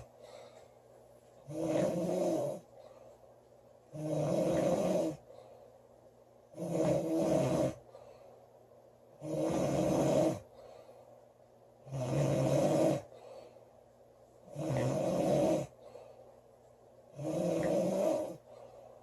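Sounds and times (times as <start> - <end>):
quiet breathing: 0.0 - 19.0
woman snoring loudly: 1.5 - 2.6, 3.9 - 5.2, 6.6 - 7.8, 9.2 - 10.4, 11.9 - 13.1, 14.5 - 15.7, 17.2 - 18.4.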